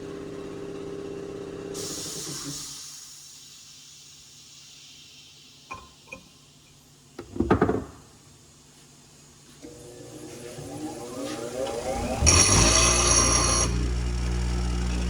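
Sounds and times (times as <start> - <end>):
hiss: 1.7 - 5.7.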